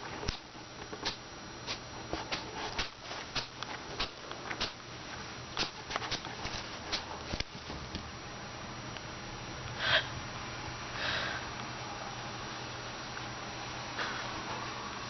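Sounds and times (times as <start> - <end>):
rabbit sneezing: 14.0 - 14.4.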